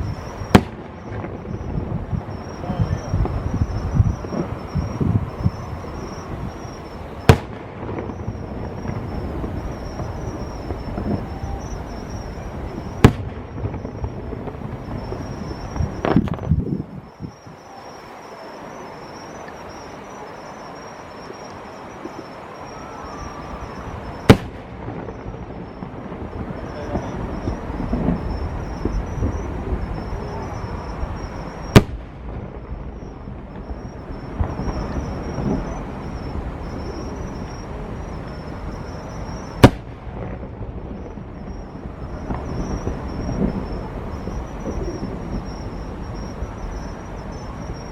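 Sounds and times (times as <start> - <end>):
sharp firework bang: 0.0 - 16.8, 24.2 - 32.9, 39.5 - 45.6
steady background noise: 0.0 - 47.9.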